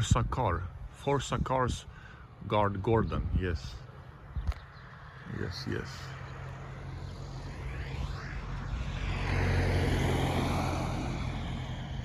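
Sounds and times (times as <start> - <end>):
steady low hum: 3.6 - 12.0
car passing by: 5.0 - 12.0.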